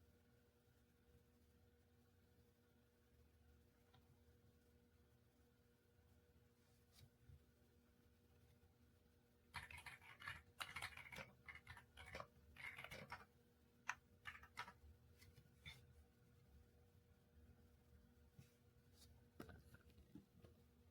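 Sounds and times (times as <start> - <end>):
mechanical keyboard typing: 9.5 - 13.3, 13.9 - 14.8.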